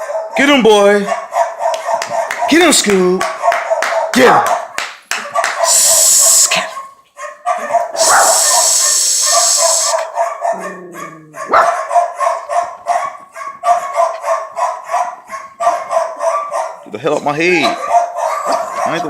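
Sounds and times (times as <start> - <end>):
recorded dog barking: 0.0 - 19.0
loud hiss: 5.7 - 6.5, 8.0 - 10.1.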